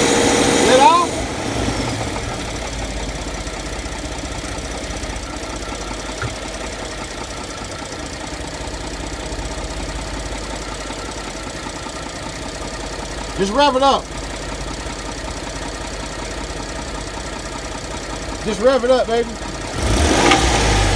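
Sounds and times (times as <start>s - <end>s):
car engine idling with knock: 0.0s - 20.9s.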